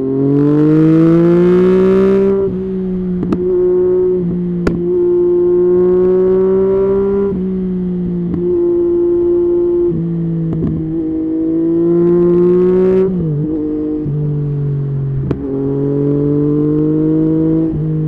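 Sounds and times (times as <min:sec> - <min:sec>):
motorcycle engine under throttle: 0:00.0 - 0:18.0
exhaust pop: 0:03.1 - 0:03.6, 0:04.6 - 0:05.1, 0:10.5 - 0:10.9, 0:15.2 - 0:15.5.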